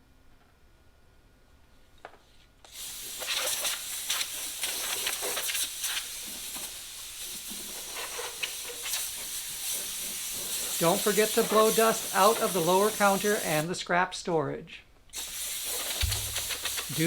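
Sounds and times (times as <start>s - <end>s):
compressed air blow gun hissing: 2.7s - 13.8s, 15.1s - 17.0s.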